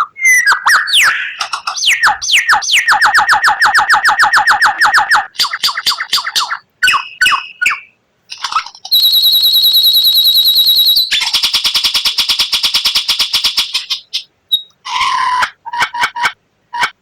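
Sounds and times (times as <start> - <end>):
bird whistled notes: 0.0 - 8.0, 8.9 - 11.5
bird high trill: 0.0 - 15.4
bird rapid repeated notes: 0.3 - 14.7.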